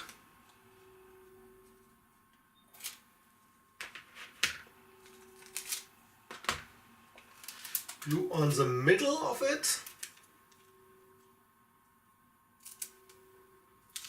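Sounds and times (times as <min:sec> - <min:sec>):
adhesive tape crackling: 0:12.6 - 0:13.2.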